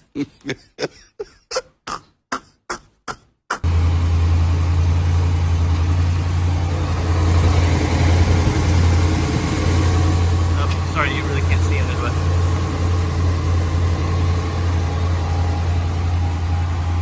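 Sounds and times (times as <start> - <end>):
truck engine idling: 3.6 - 17.0.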